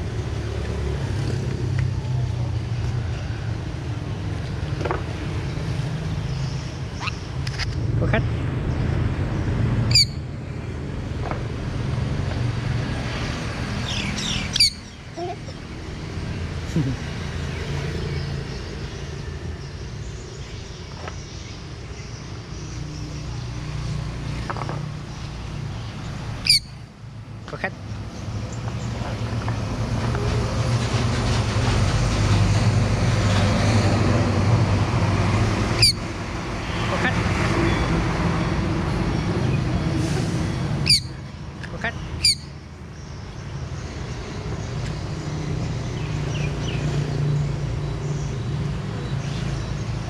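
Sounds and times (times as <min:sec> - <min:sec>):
parrot chirps: 0:07.0 - 0:07.8, 0:09.9 - 0:10.2, 0:13.9 - 0:15.0, 0:26.4 - 0:26.8, 0:35.8 - 0:36.1, 0:40.8 - 0:41.2, 0:42.2 - 0:42.5
parrot shrill call: 0:09.9 - 0:10.2, 0:26.4 - 0:26.7, 0:35.8 - 0:36.0, 0:40.8 - 0:41.1.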